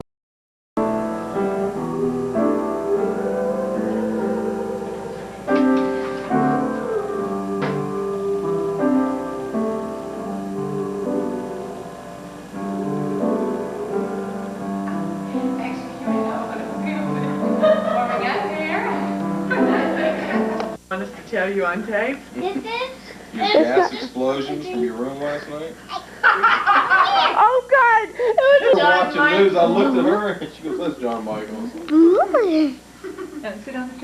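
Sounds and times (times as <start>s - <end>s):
keyboard playing slow chords: 0.8s - 20.8s.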